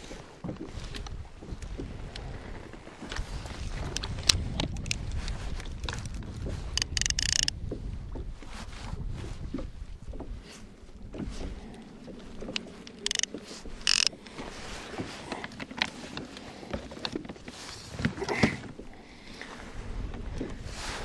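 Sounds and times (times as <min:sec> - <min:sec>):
wind: 0:00.0 - 0:21.0
water noise: 0:06.7 - 0:07.5, 0:09.6 - 0:21.0
fishing tackle clicks and knocks: 0:06.8 - 0:07.5, 0:12.5 - 0:16.4
short rasping bursts: 0:06.8 - 0:07.5, 0:13.0 - 0:13.3, 0:13.9 - 0:14.8.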